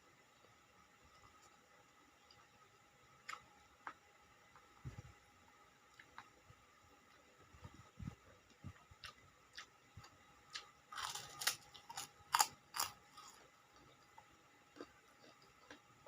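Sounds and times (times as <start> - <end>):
soft chewing: 3.2 - 5.2, 5.9 - 16.0
crisp crunches of crackers: 10.6 - 14.1.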